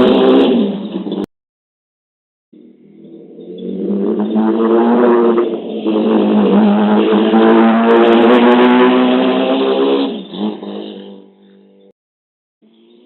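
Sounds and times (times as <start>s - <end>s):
loud vehicle engine running: 2.6s - 11.4s.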